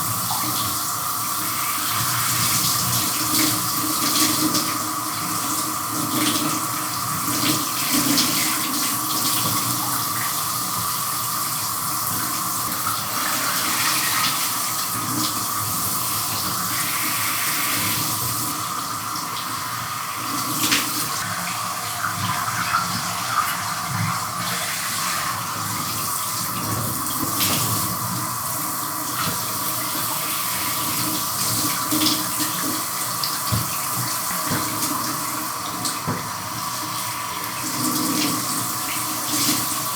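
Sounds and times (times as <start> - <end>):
shower spray running: 0.0 - 39.9.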